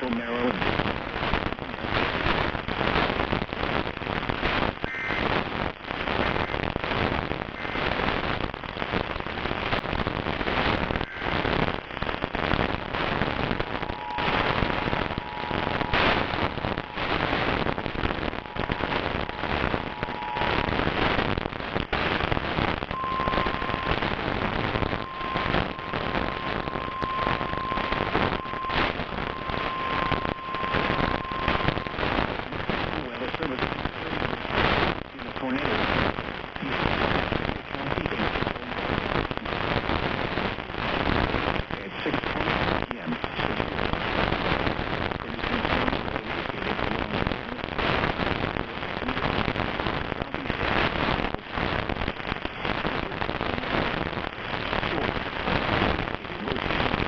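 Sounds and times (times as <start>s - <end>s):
crackling radio static: 0.0s - 57.0s
steady alarm tone: 13.8s - 21.1s, 22.9s - 32.2s.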